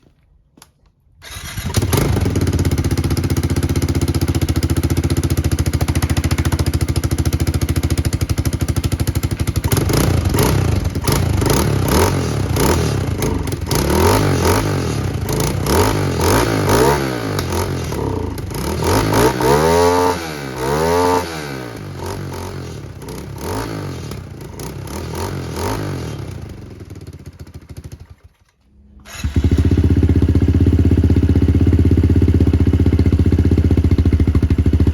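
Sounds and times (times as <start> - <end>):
motorcycle engine idling and revving: 1.2 - 34.9.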